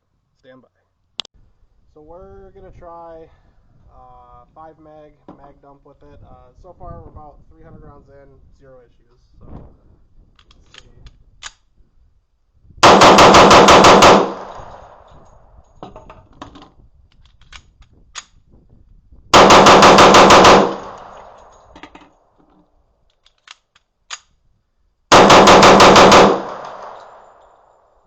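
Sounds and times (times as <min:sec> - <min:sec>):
light metallic clicks and clinks: 0:21.0 - 0:24.3.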